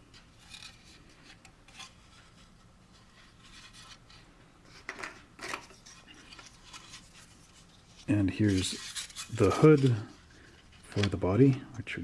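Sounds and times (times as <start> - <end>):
plastic parts rustling and clicking: 3.2 - 11.6.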